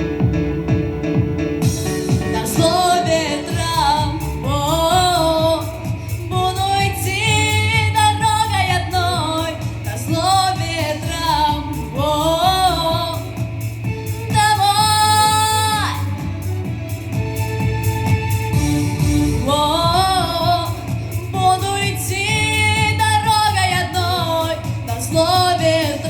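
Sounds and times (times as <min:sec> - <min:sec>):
pop backing track: 0:00.0 - 0:26.0
girl singing with vibrato: 0:02.3 - 0:13.5, 0:14.3 - 0:16.3, 0:19.4 - 0:26.0.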